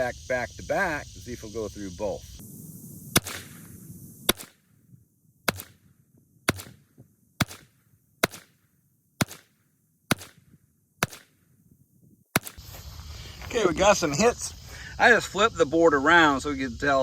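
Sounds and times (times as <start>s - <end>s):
pistol shots: 3.1s - 3.7s, 4.3s - 4.7s, 5.5s - 11.5s, 12.4s - 12.6s.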